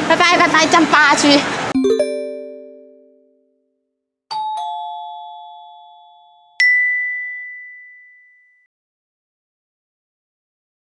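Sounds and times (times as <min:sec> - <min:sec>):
high bright ding: 0:01.8 - 0:03.4, 0:04.3 - 0:08.6
bell-like chime notes: 0:01.8 - 0:03.6, 0:04.3 - 0:08.7.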